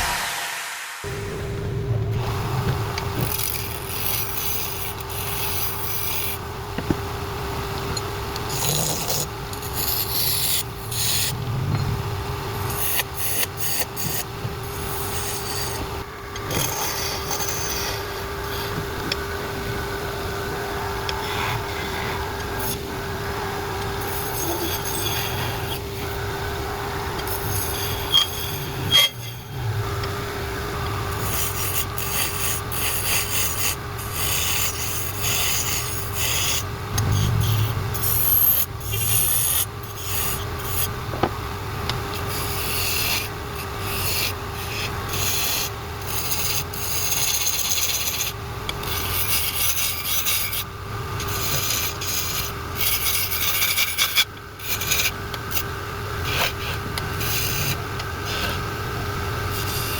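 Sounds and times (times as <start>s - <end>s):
tool scraping spinning wood: 31.1s - 40.9s.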